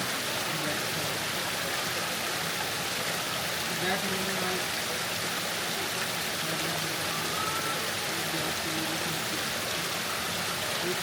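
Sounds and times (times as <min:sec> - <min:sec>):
waterfall rushing: 0:00.0 - 0:11.0
faint voices: 0:05.7 - 0:11.0.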